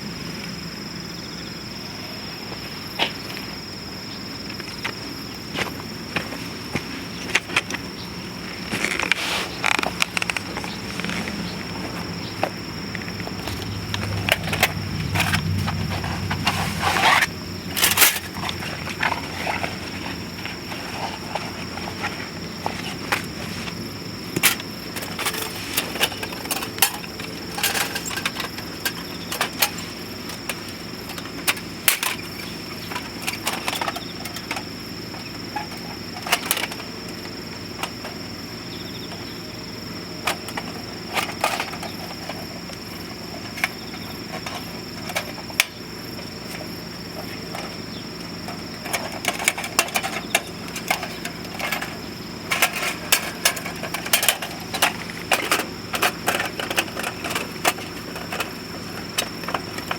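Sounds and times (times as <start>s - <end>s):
wood crackling and popping: 8.4s - 36.8s.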